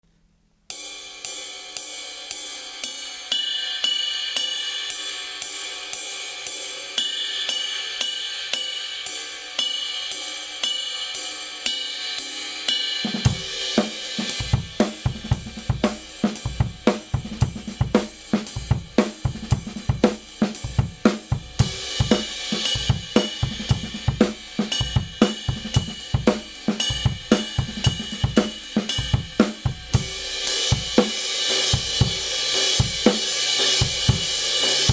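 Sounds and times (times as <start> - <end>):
ride cymbal pattern: 0.7 - 34.9
kick drum and snare: 14.4 - 31.2.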